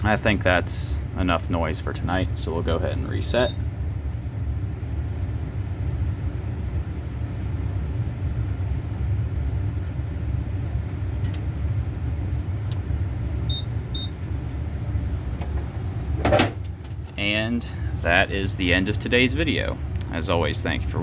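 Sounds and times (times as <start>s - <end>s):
low background rumble: 0.0s - 21.0s
short high beeps: 3.4s - 3.6s.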